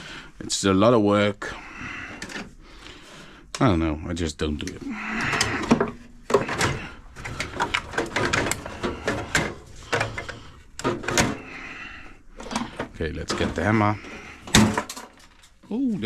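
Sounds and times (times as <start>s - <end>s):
microwave parts clicking and scraping: 2.0s - 2.6s, 4.5s - 15.7s.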